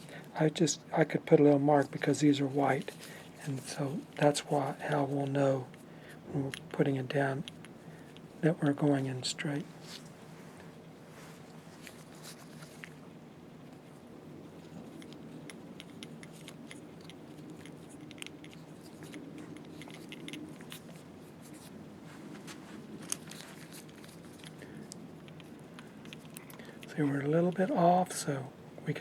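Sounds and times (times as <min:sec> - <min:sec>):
steady low hum: 0:00.0 - 0:29.0
small parts clicking and scraping: 0:14.6 - 0:21.8, 0:23.0 - 0:26.9.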